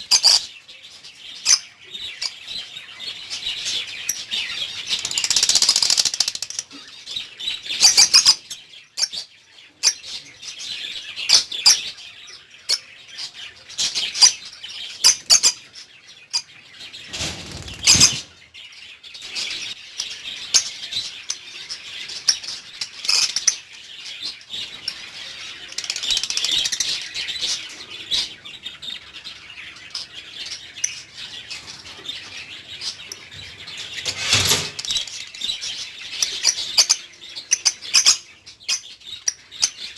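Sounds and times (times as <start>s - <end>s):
wing flapping: 17.0s - 18.5s.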